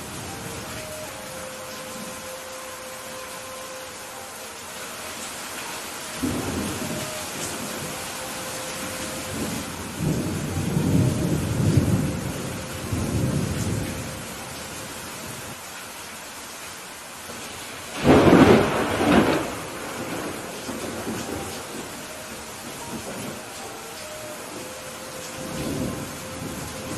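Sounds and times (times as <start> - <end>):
rain hissing: 0.0 - 26.9
rolling thunder: 6.2 - 14.3, 17.9 - 23.6
sharp thunder crack: 18.0 - 21.1.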